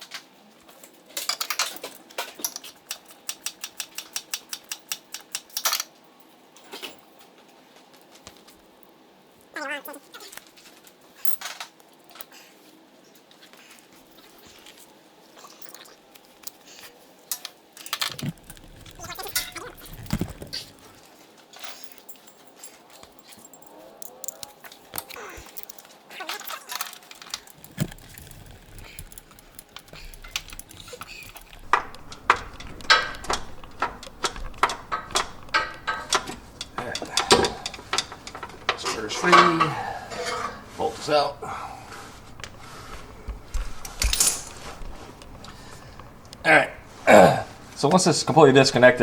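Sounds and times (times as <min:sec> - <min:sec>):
ratchet wrench clicking: 0:02.9 - 0:05.8
metal clinking: 0:18.0 - 0:20.8, 0:21.5 - 0:40.8, 0:43.6 - 0:44.8.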